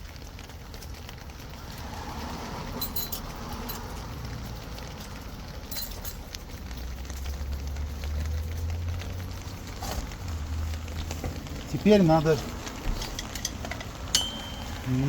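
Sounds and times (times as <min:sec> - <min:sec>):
metal tools clinking: 0:02.8 - 0:03.9, 0:05.7 - 0:06.3, 0:12.9 - 0:14.9.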